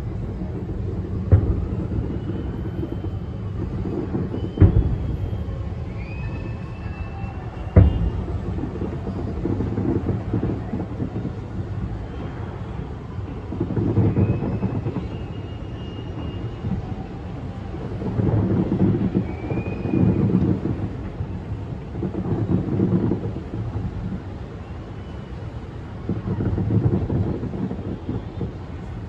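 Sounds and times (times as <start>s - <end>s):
distant fireworks booming: 0.0s - 29.0s.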